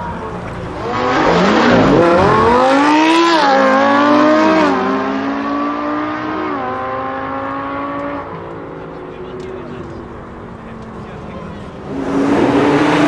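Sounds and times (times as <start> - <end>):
car accelerating hard past: 11.8 - 13.0.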